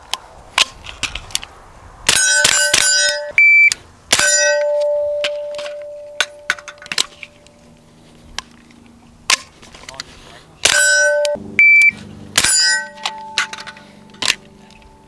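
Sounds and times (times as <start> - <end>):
steel target clanging: 2.1 - 3.4, 4.1 - 7.4, 10.6 - 14.5.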